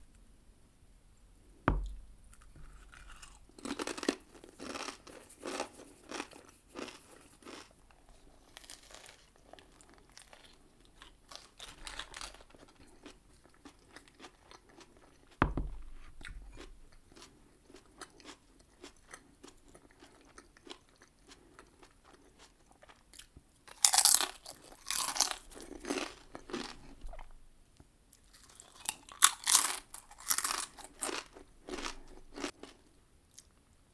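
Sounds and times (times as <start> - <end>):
sharp knocks with low thud: 1.7 - 2.9, 15.4 - 16.6
crunchy chewing: 1.7 - 27.4, 28.2 - 33.5.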